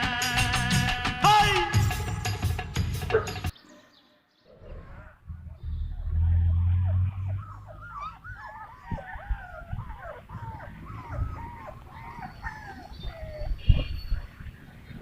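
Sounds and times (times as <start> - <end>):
dogs whining: 4.5 - 14.5.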